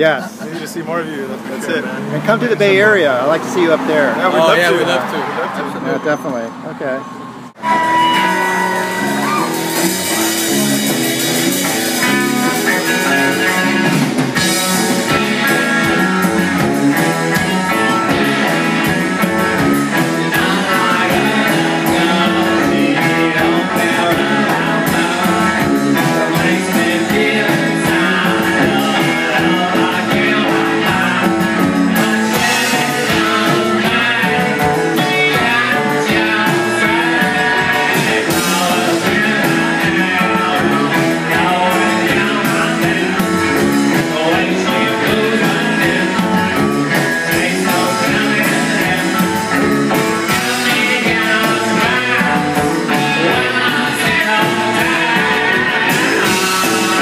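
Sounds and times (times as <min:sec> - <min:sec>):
rock music with guitar: 0:07.5 - 0:57.0.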